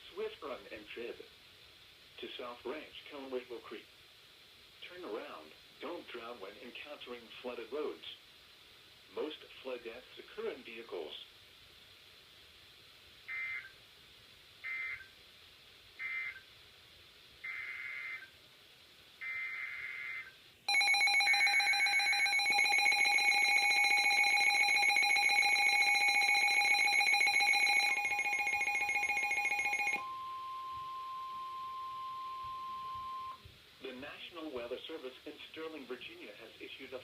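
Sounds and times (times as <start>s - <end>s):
pulsing alarm tone: 19.2s - 33.4s.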